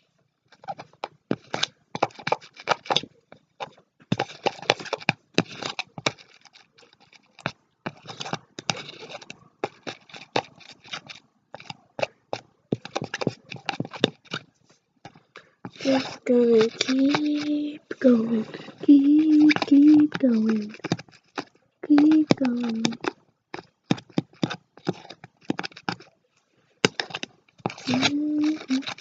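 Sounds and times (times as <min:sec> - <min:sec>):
utensil scraping a container: 0:04.1 - 0:12.1, 0:15.7 - 0:23.2, 0:26.9 - 0:29.0.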